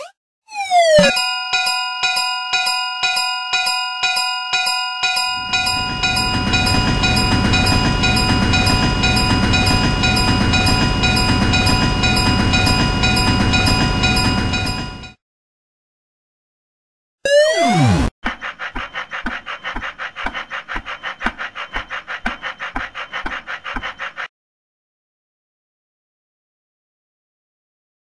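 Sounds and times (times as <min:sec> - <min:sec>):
railroad crossing bell ringing: 0:01.1 - 0:15.2.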